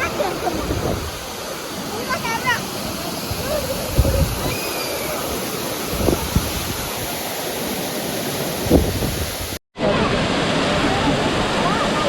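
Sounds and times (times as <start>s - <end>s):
wind buffeting microphone: 0.0s - 1.3s, 3.2s - 7.2s, 8.6s - 9.6s
waterfall rushing: 0.0s - 12.0s.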